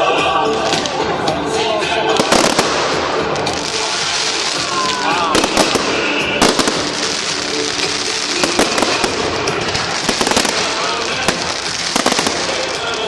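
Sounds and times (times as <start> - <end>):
fireworks bangs and crackles: 0.4 - 13.0.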